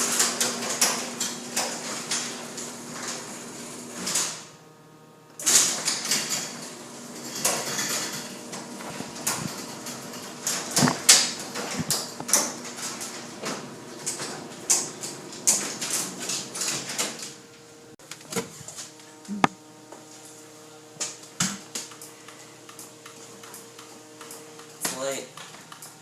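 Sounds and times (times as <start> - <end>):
clicks and clattering knocks: 7.2 - 17.3.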